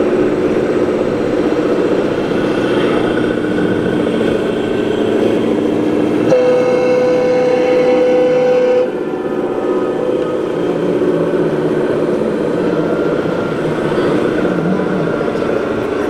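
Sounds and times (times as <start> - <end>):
rattling model engine running: 0.0 - 6.4
model vehicle horn tone: 6.3 - 10.5.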